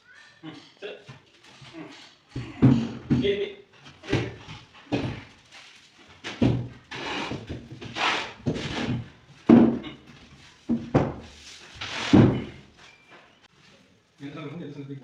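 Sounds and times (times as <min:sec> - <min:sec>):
heavy wooden thuds and knocks: 0:02.3 - 0:05.3, 0:06.2 - 0:12.7
wood scraping: 0:04.0 - 0:12.8.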